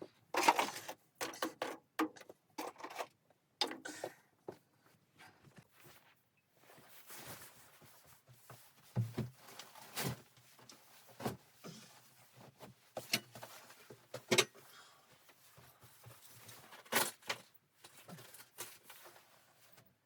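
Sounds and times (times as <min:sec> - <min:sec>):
objects knocking and clunking: 0:00.3 - 0:04.6, 0:08.4 - 0:14.7.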